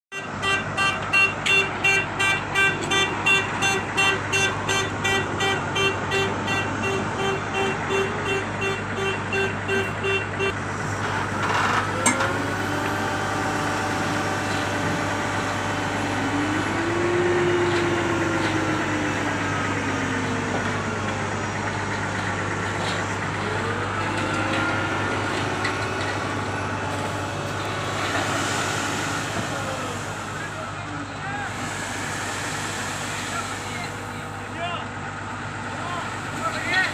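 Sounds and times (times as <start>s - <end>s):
vehicle horn beeping rapidly: 0.1s - 10.6s
heavy machinery engine running: 0.2s - 36.9s.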